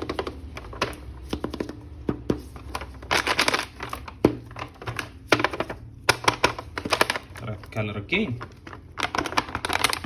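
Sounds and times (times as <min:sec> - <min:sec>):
plastic packaging clicks and taps: 0:00.0 - 0:07.5, 0:08.3 - 0:10.0
plastic packaging crinkling: 0:02.4 - 0:10.0.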